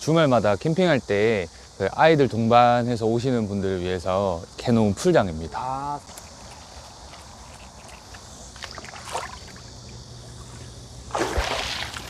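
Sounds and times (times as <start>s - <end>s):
water sloshing and splashing: 6.0s - 12.0s.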